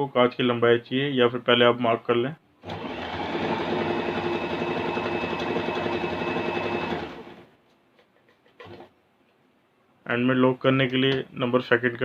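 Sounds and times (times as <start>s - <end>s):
electric sewing machine running: 2.6s - 7.5s.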